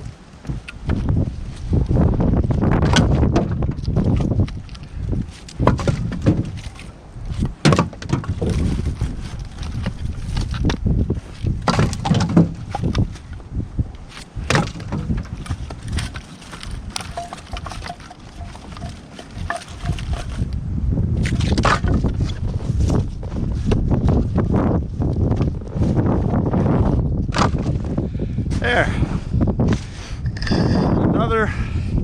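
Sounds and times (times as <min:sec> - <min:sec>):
firewood pieces clunking: 0:02.7 - 0:13.4, 0:14.0 - 0:20.6, 0:21.2 - 0:22.4.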